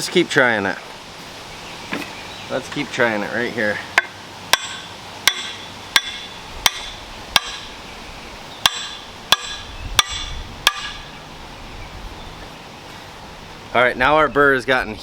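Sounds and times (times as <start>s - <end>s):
hammer striking wooden handle: 4.0s - 7.7s, 8.6s - 11.1s.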